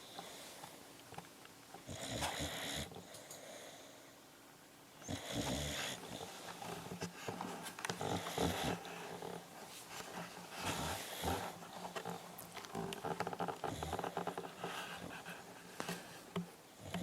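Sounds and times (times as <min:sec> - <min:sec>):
pet snoring: 0:01.8 - 0:03.9, 0:05.0 - 0:09.6, 0:10.5 - 0:15.3, 0:16.8 - 0:17.0.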